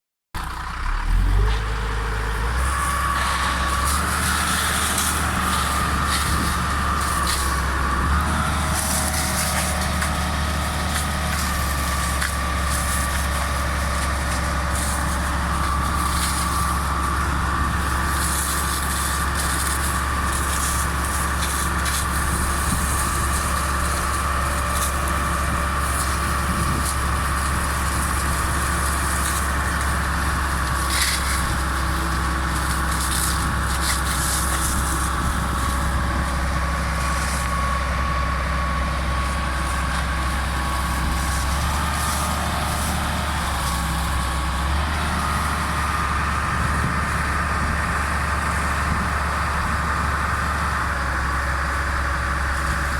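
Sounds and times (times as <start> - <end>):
heavy vehicle engine rumbling: 0.4 - 52.9.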